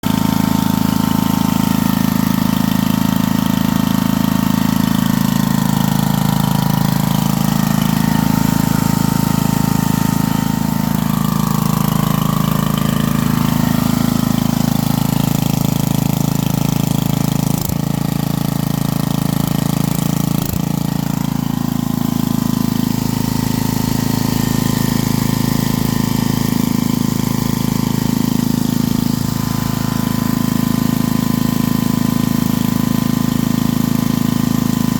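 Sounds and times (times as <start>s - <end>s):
generator engine running: 0.0s - 34.9s.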